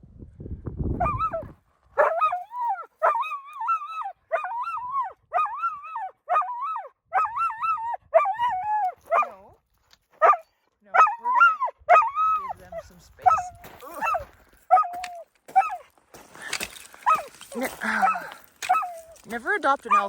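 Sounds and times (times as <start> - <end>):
dog barking in high yelps: 1.0 - 9.5, 10.2 - 12.5, 13.2 - 15.9, 17.0 - 19.2.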